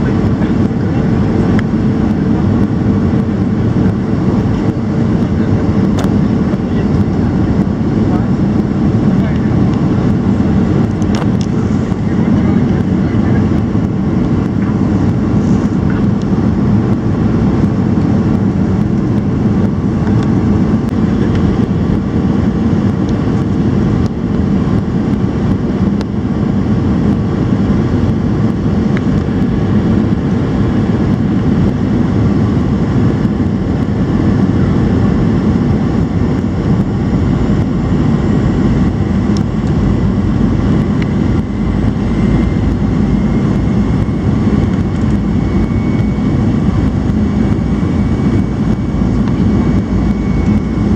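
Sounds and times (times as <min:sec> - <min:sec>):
airplane cabin drone: 0:00.0 - 0:50.9.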